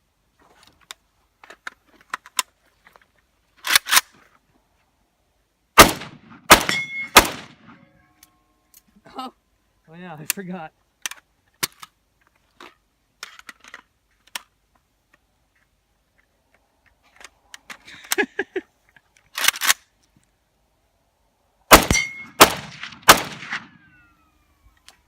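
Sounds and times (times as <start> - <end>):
rifle shots: 5.8 - 7.8, 21.7 - 23.9
metallic ringing: 6.7 - 7.2, 21.9 - 22.4
rifle handling clicks: 18.9 - 20.3.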